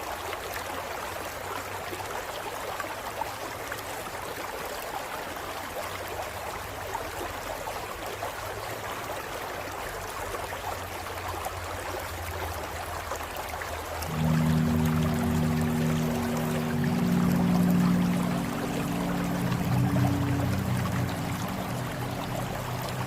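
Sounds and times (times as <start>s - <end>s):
stream water running over rocks: 0.0s - 23.0s
soft music with low held notes: 14.1s - 23.0s.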